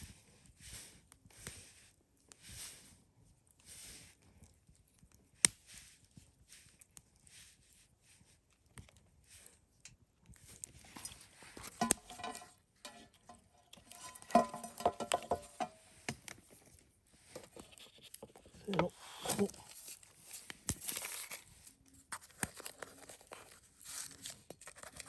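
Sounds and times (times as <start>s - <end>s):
metal cookware clattering: 11.7s - 15.8s.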